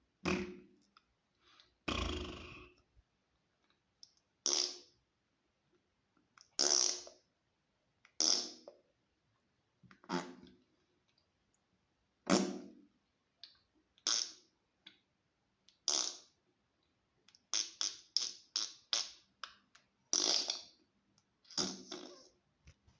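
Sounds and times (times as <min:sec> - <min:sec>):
farts: 0:00.2 - 0:00.7, 0:01.9 - 0:02.8, 0:04.5 - 0:04.8, 0:06.6 - 0:07.2, 0:08.2 - 0:08.7, 0:10.0 - 0:10.6, 0:12.3 - 0:12.8, 0:14.1 - 0:14.4, 0:15.9 - 0:16.3, 0:17.5 - 0:19.2, 0:20.1 - 0:20.7, 0:21.5 - 0:22.3.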